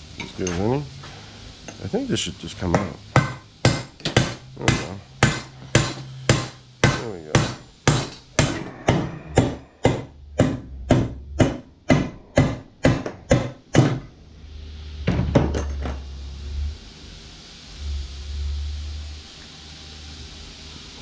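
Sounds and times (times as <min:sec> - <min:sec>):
hammer striking steel punch: 0:02.7 - 0:14.0
low hum: 0:08.4 - 0:12.9, 0:14.0 - 0:20.6.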